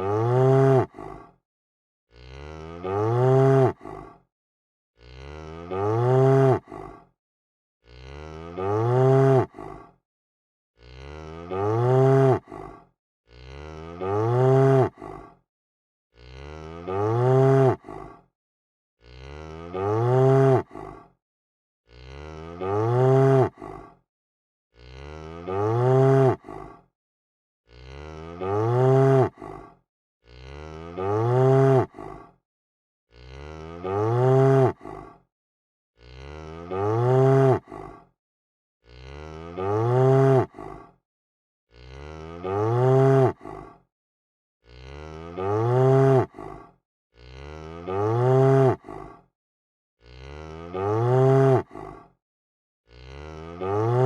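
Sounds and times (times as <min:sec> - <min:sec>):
cow mooing: 0:00.0 - 0:00.9, 0:02.1 - 0:03.8, 0:05.0 - 0:06.7, 0:07.9 - 0:09.5, 0:10.8 - 0:12.4, 0:13.3 - 0:15.0, 0:16.2 - 0:17.8, 0:19.0 - 0:20.6, 0:21.9 - 0:23.6, 0:24.8 - 0:26.4, 0:27.7 - 0:29.4, 0:30.3 - 0:31.9, 0:33.1 - 0:34.8, 0:36.0 - 0:37.7, 0:38.9 - 0:40.5, 0:41.7 - 0:43.4, 0:44.7 - 0:46.3, 0:47.2 - 0:48.8, 0:50.1 - 0:51.6, 0:52.9 - 0:54.0.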